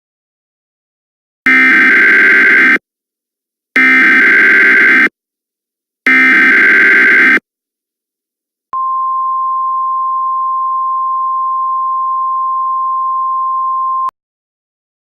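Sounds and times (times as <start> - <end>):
steady single-pitch attention tone: 8.8 - 14.1.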